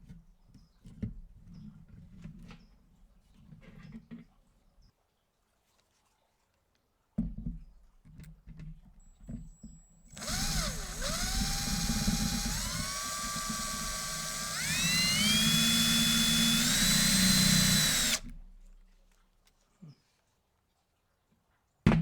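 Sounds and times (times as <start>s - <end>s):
electric drill motor whine: 10.1s - 18.3s.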